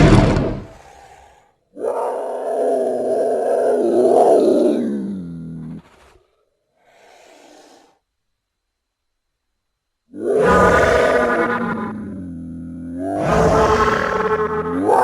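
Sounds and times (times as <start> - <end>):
dinosaur roar: 0.0 - 6.2, 10.1 - 15.0.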